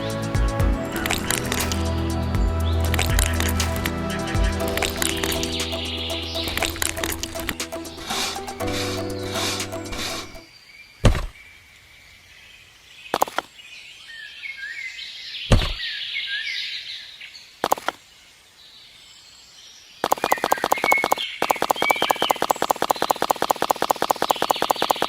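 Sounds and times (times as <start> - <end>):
music: 0.0 - 10.4
birds chirping: 0.7 - 10.6.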